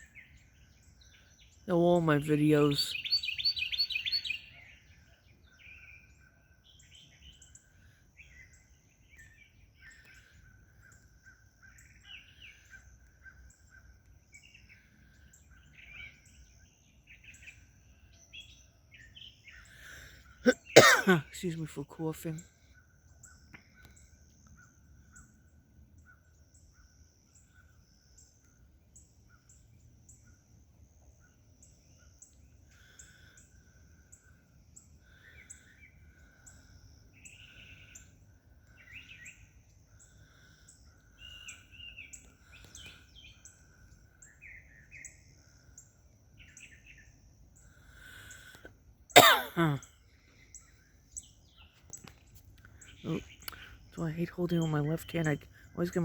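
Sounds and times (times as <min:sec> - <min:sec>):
birds chirping and calling: 0:00.0 - 0:21.6, 0:50.4 - 0:56.0.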